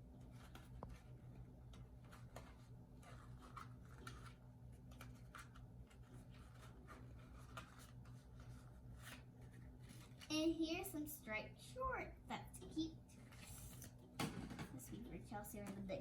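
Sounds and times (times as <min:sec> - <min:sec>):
package clicks and rustles: 0:00.2 - 0:10.3.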